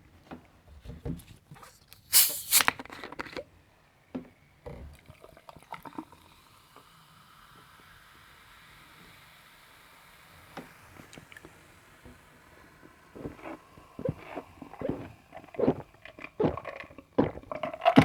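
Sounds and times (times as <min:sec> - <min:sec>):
loud hissing burst: 0:02.1 - 0:02.7
faint steady hiss: 0:05.9 - 0:17.5
liquid sounds: 0:11.2 - 0:18.0
clicks and knocks of ice: 0:13.2 - 0:18.0.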